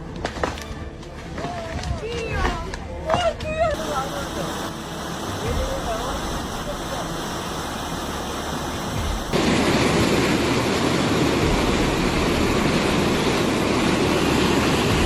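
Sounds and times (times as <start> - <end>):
loud rushing noise: 3.8 - 15.0.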